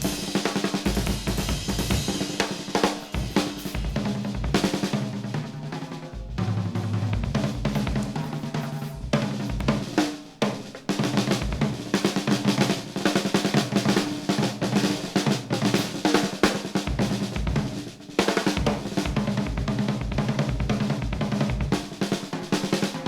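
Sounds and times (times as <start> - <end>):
hi-hat and cymbals: 0.0 - 4.9
snare drum rolls and rimshots: 0.0 - 23.0
bass drum kicks: 6.2 - 8.2.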